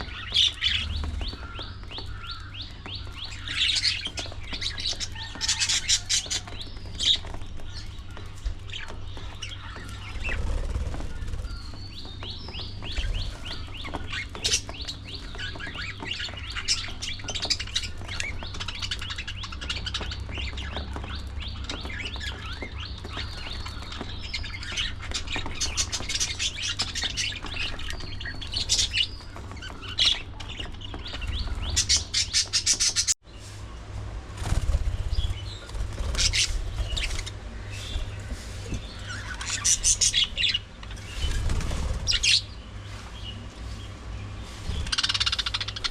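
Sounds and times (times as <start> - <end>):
budgerigars chattering and chirping: 0.0 - 33.2, 34.9 - 45.9
steady low hum: 0.0 - 45.9.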